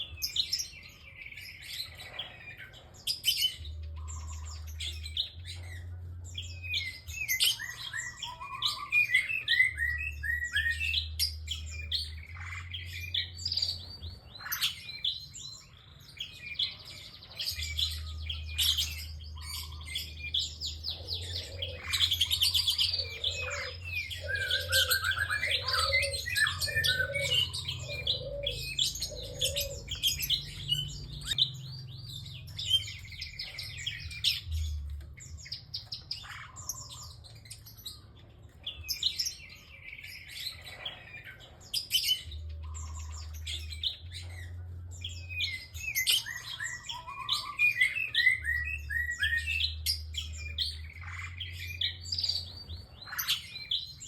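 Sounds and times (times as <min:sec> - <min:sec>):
bird chirping and trilling: 0:00.0 - 0:54.0.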